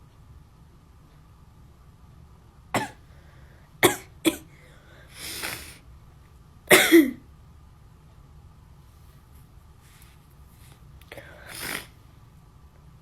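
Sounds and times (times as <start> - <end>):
person coughing sharply: 2.8 - 3.0, 3.8 - 4.5, 6.7 - 7.2.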